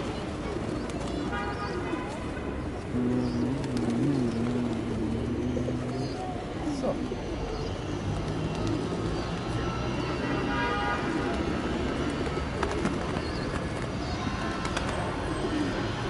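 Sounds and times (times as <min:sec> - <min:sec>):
pigeons cooing: 0:02.8 - 0:09.4.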